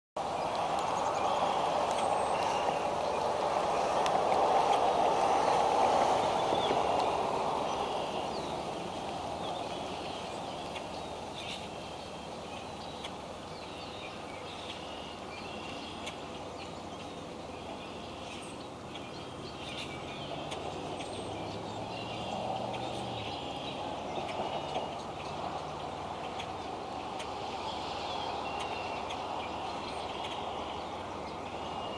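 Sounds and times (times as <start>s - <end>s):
rain shower hissing: 0.2s - 14.6s
birds chirping: 0.2s - 31.9s.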